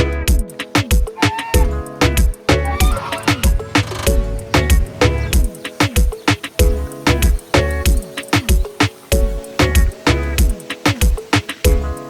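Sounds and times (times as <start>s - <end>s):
afrobeat music with heavy drums: 0.0s - 12.0s.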